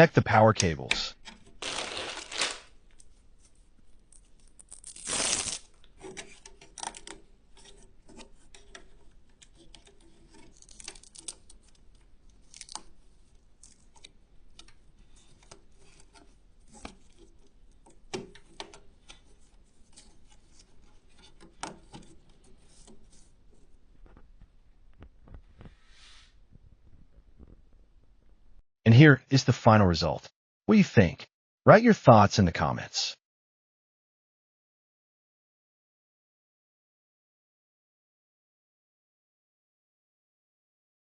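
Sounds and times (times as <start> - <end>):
cables clicking and rustling: 0.9 - 25.7.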